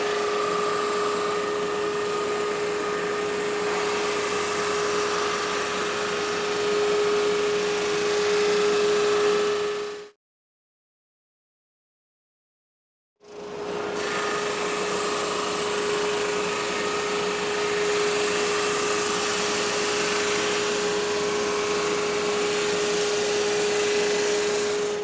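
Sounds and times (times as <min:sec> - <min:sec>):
drum sander sanding wood: 0:00.0 - 0:08.8, 0:13.9 - 0:25.0.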